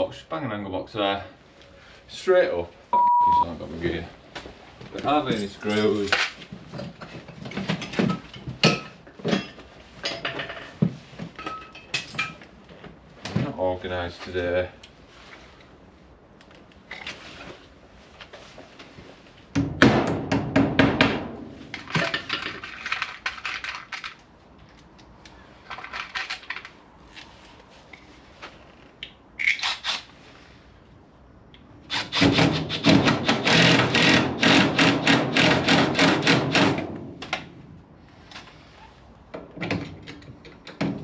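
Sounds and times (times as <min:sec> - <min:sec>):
tools clattering in toolbox: 0:05.2 - 0:10.8, 0:11.4 - 0:12.4.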